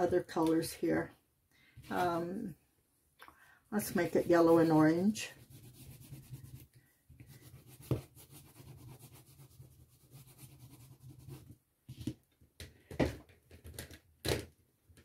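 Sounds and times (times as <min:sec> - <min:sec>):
wax crayon rubbing on paper: 0:03.8 - 0:11.5.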